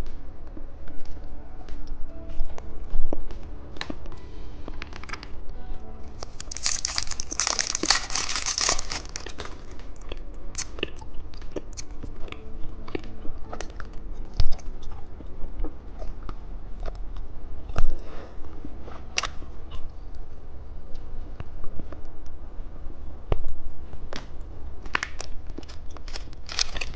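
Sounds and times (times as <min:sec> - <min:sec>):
plastic wrapper crinkling and tearing: 0:06.2 - 0:11.1, 0:25.0 - 0:26.9
packaging clicks and crinkles: 0:06.2 - 0:12.4, 0:25.0 - 0:26.9.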